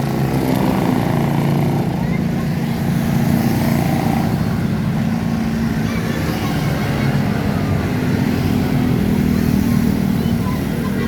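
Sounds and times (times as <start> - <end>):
traffic noise: 0.0 - 11.0.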